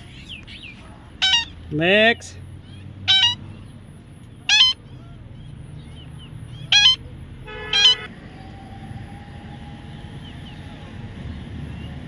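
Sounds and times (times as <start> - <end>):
parrot shrill calls: 1.2 - 1.6, 2.7 - 3.4, 4.4 - 4.8, 6.6 - 7.0, 7.7 - 8.1.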